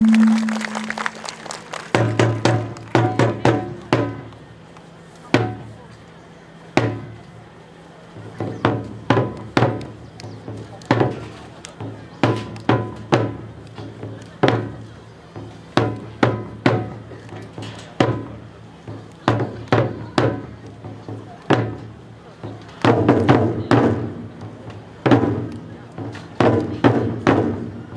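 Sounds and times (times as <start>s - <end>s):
taiko drums struck hard: 2.0s - 4.2s, 8.4s - 14.8s, 15.4s - 17.1s, 18.0s - 22.0s, 22.8s - 27.8s.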